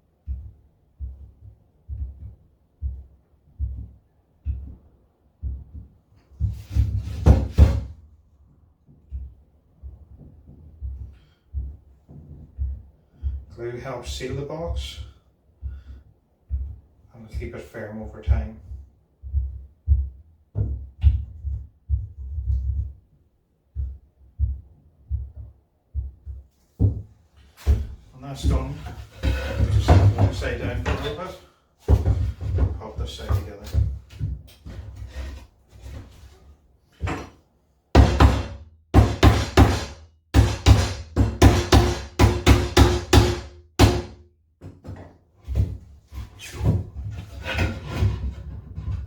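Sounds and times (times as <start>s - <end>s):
wooden thuds and bumps: 18.3s - 23.0s, 23.8s - 36.4s, 37.0s - 37.4s, 38.0s - 49.0s
hammer knocking on wood: 31.9s - 34.4s, 38.0s - 45.8s.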